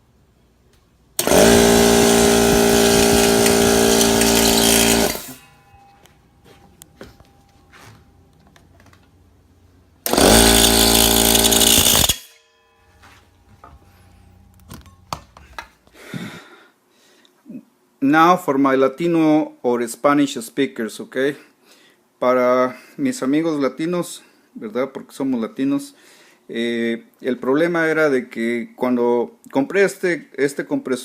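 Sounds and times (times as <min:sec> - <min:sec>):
air compressor running: 0:01.2 - 0:06.0, 0:10.0 - 0:12.4.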